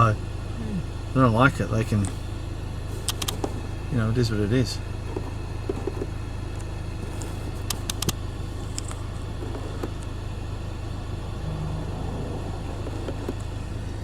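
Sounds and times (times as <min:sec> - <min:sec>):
car engine hum: 0:00.0 - 0:14.0
sharp clicks: 0:07.6 - 0:09.0.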